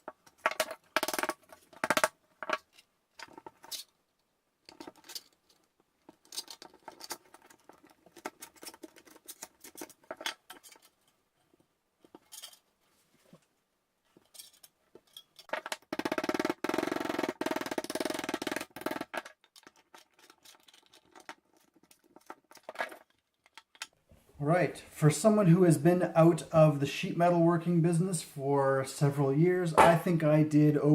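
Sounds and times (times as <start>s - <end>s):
metal clatter: 14.2s - 15.9s.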